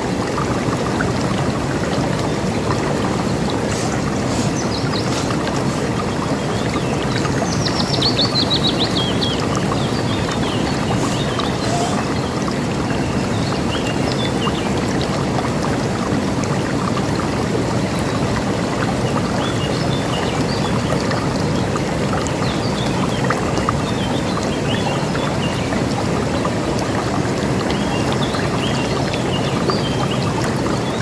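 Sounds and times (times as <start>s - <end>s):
river water rushing: 0.0s - 31.0s
small birds chirping: 3.3s - 12.4s.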